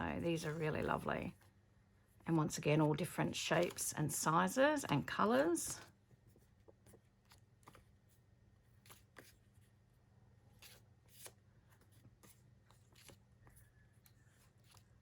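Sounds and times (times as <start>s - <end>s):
sticker sheets and paper rustling: 2.3s - 15.0s.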